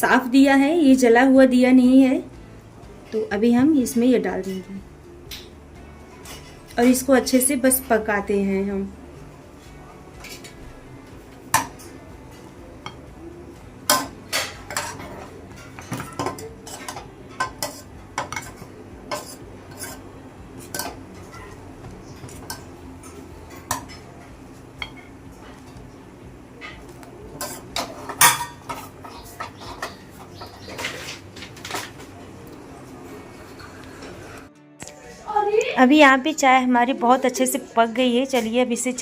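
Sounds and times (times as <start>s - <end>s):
metal utensil scraping a pan: 6.1s - 7.5s, 13.8s - 25.8s, 26.6s - 32.1s.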